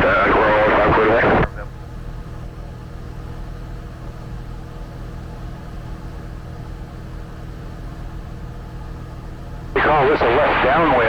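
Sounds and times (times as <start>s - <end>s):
faint steady tones: 0.0s - 1.7s, 9.8s - 11.0s
aircraft engine droning in cabin: 0.0s - 11.0s.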